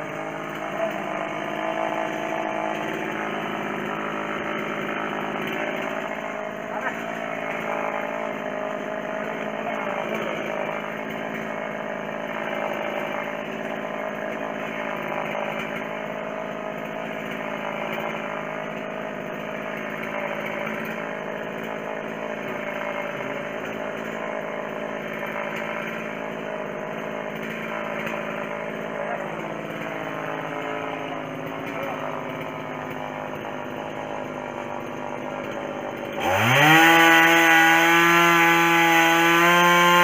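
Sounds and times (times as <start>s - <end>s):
chainsaw engine running: 0.0s - 40.0s.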